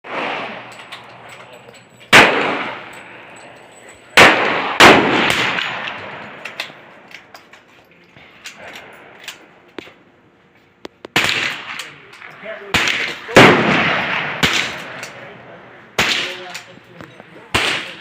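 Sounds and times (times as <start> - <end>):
gunshots with echo: 0.0 - 0.7, 2.1 - 3.3, 4.2 - 6.8, 11.1 - 15.2, 16.0 - 16.5, 17.5 - 18.0.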